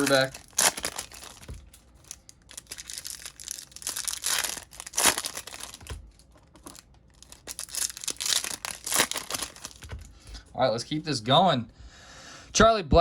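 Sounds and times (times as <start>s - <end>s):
card pack wrappers crinkling and tearing: 0.0s - 10.2s.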